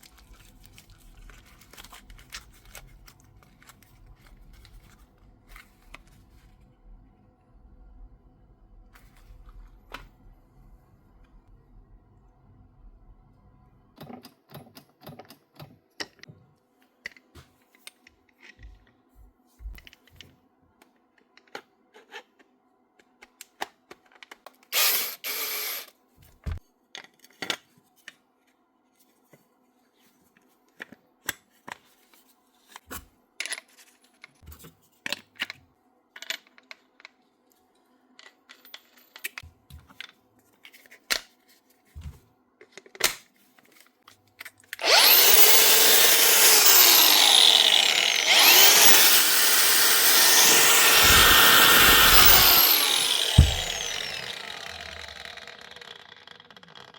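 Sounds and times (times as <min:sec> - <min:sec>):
power tool parts clicking: 0:24.8 - 0:25.9, 0:44.7 - 0:56.9.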